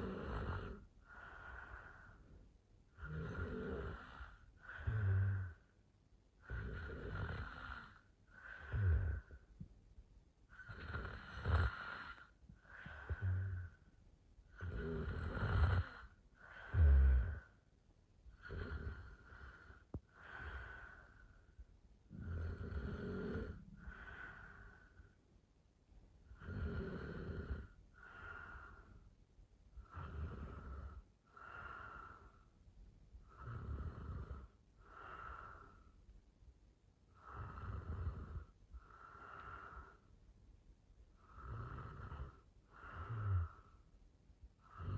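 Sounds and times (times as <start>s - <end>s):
woman snoring: 0.0s - 1.9s, 3.0s - 5.6s, 6.5s - 9.4s, 10.6s - 13.8s, 14.6s - 17.5s, 18.4s - 21.0s, 22.1s - 24.6s, 26.4s - 28.8s, 29.8s - 32.3s, 33.3s - 35.8s, 37.2s - 38.5s, 41.2s - 43.7s, 44.7s - 44.9s.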